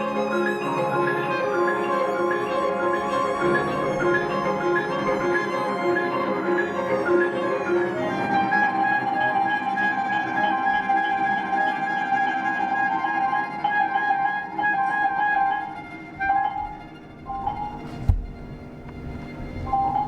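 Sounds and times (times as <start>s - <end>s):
flute: 0.0s - 18.2s
violin: 0.0s - 20.0s.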